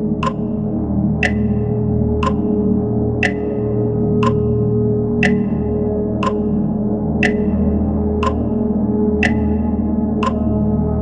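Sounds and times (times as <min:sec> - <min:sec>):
dark ambient synth drone: 0:00.0 - 0:11.0
clock ticking: 0:00.2 - 0:08.6, 0:09.2 - 0:10.6.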